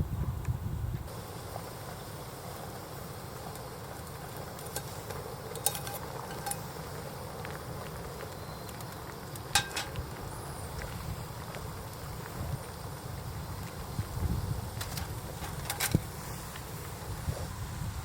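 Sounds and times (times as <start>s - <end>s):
wind rumble on microphone: 0.0s - 1.1s, 9.8s - 18.0s
light clicks and clinks: 4.5s - 6.8s, 9.5s - 10.1s.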